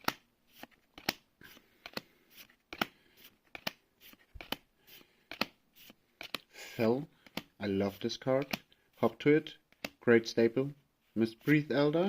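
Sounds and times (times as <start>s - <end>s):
cards being flipped: 0.0s - 6.5s, 7.2s - 8.8s, 9.7s - 10.0s.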